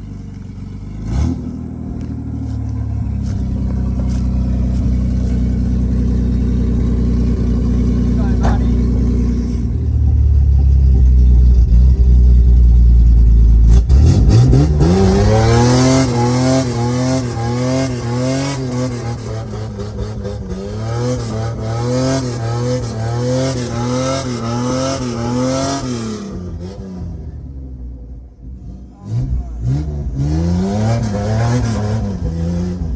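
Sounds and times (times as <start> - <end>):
engine revving without exhaust: 0.9 - 9.8, 13.6 - 27.7, 28.5 - 32.9.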